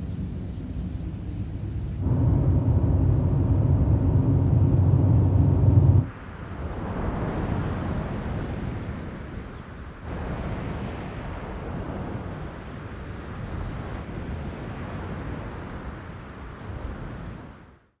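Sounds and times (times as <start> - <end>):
low outdoor rumble: 0.3 - 6.1.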